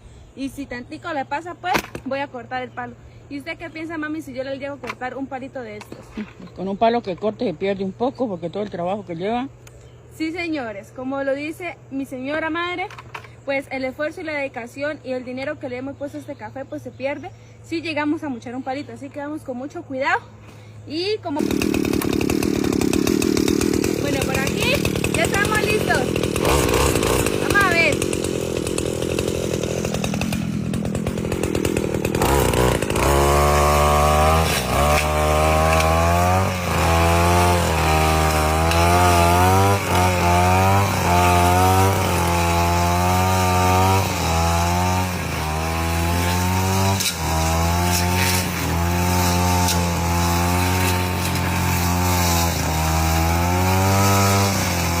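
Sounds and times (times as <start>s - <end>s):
two-stroke brush cutter: 20.2s - 55.0s.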